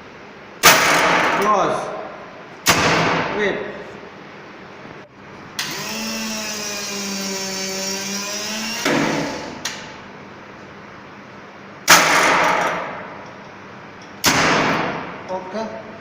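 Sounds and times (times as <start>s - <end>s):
motor whining: 5.6s - 9.7s.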